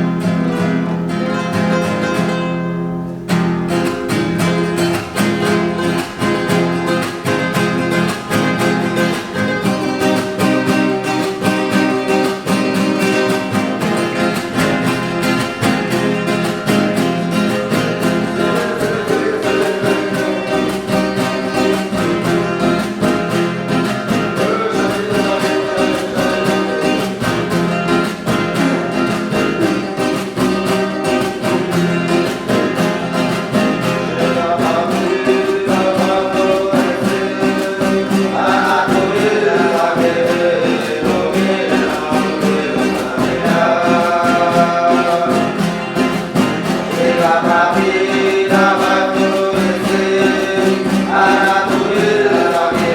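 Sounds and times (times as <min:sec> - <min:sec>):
strummed plucked string instrument: 0:00.0 - 0:52.9
voices chanting: 0:00.0 - 0:52.9.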